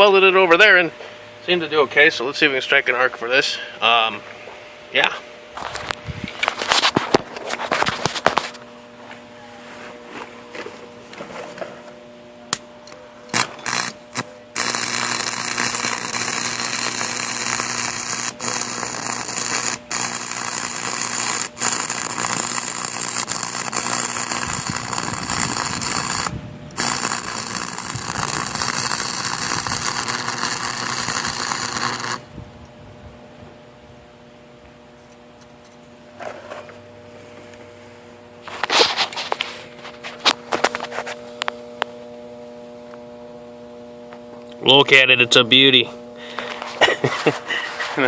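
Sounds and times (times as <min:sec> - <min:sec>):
welding arc crackling and buzzing: 0:04.9 - 0:08.7, 0:13.3 - 0:32.3, 0:38.4 - 0:43.1, 0:44.0 - 0:48.0
transformer hum: 0:05.5 - 0:43.3.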